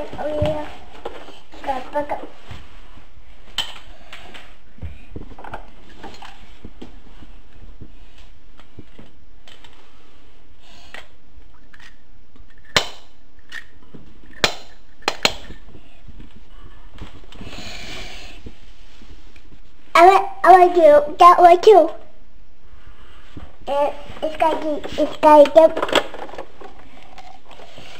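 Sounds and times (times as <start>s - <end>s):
plastic toy clacking: 24.4s - 27.2s.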